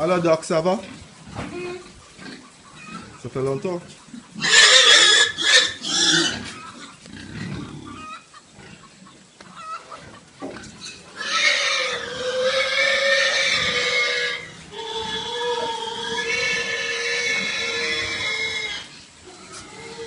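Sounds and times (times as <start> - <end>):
pigs squealing: 0.2 - 20.0
pig grunting: 4.1 - 9.1, 9.8 - 20.0.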